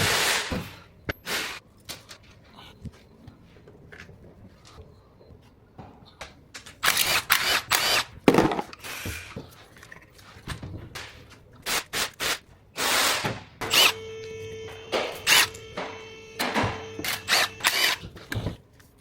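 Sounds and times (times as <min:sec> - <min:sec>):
tools and parts clattering: 0:05.8 - 0:11.7.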